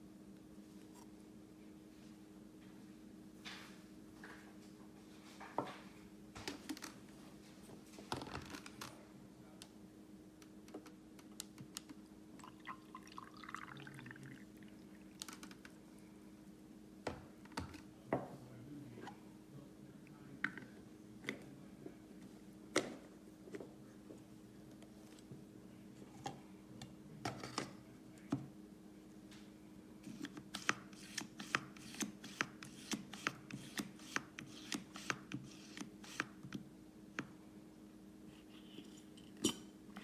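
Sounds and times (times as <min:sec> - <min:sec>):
steady low hum: 0:08.7 - 0:40.0.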